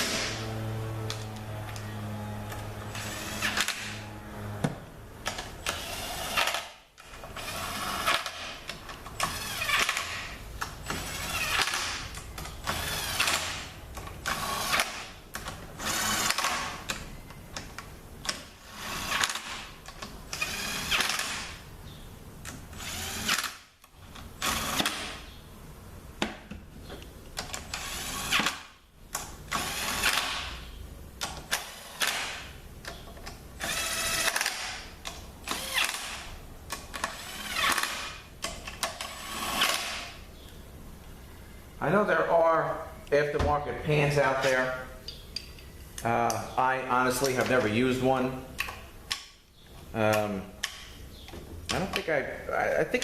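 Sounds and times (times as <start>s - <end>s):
cordless drill motor bursts: 0.0s - 4.5s, 9.2s - 10.4s, 11.0s - 12.0s, 12.6s - 15.0s, 15.8s - 16.8s, 20.4s - 21.6s, 22.7s - 23.6s, 29.5s - 30.4s, 33.6s - 34.7s, 35.4s - 36.3s, 37.0s - 38.2s.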